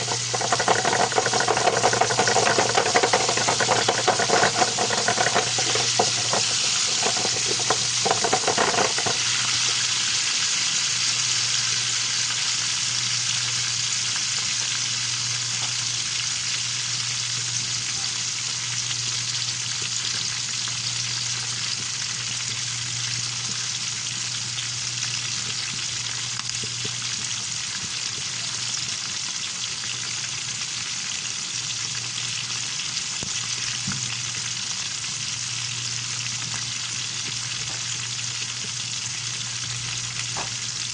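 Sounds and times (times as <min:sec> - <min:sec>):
steady low hum: 0:00.0 - 0:10.0
fish sizzling in hot oil: 0:00.0 - 0:40.9
knocks: 0:00.4 - 0:09.2.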